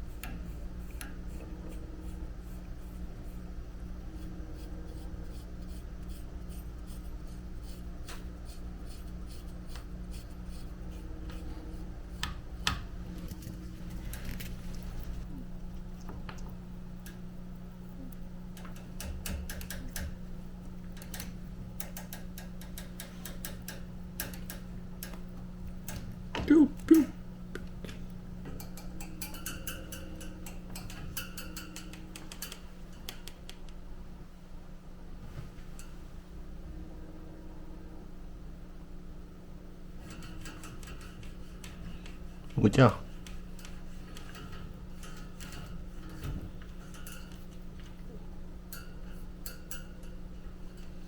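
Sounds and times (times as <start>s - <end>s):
steady low hum: 0.0s - 51.0s
light clicking and tapping: 11.3s - 20.2s, 20.8s - 26.9s, 27.5s - 33.8s, 40.0s - 50.1s
light clicks and ticks: 20.8s - 26.2s, 27.5s - 33.8s.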